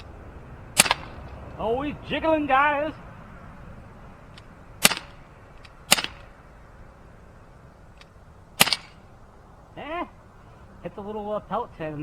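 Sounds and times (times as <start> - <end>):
bb pistol shots: 0.7 - 1.3, 4.8 - 6.4, 8.6 - 9.1.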